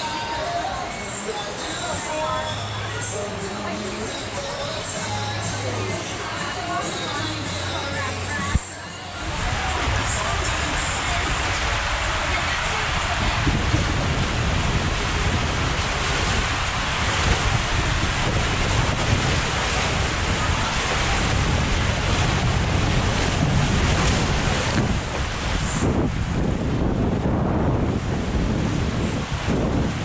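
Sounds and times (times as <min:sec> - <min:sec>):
rushing water: 0:00.0 - 0:30.0
wind buffeting microphone: 0:09.2 - 0:30.0.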